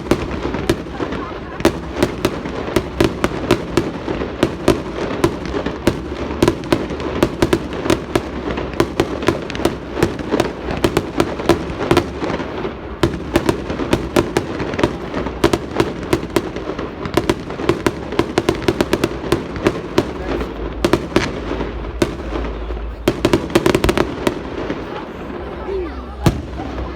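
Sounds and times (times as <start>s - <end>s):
fireworks bangs and crackles: 0.0s - 26.9s.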